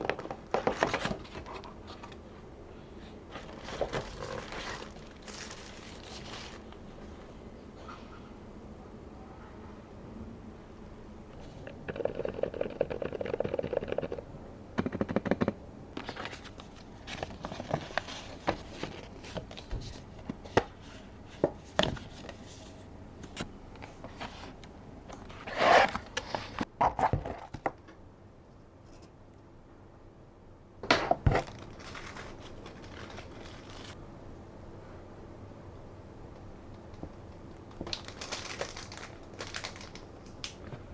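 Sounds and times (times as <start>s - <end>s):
packaging scraping and rustling: 0.0s - 2.2s, 3.3s - 6.8s, 16.0s - 20.1s, 25.2s - 26.7s, 31.2s - 34.0s, 37.8s - 40.0s.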